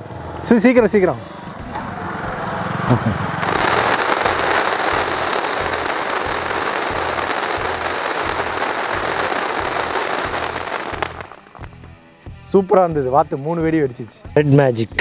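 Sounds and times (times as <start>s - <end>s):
firecracker fizzing hiss: 3.4s - 11.8s.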